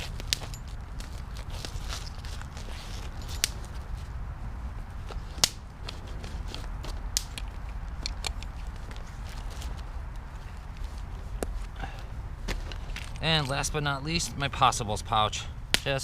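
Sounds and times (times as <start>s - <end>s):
low steady rumble: 0.0s - 16.0s
gear items clicking and tapping: 5.4s - 9.8s.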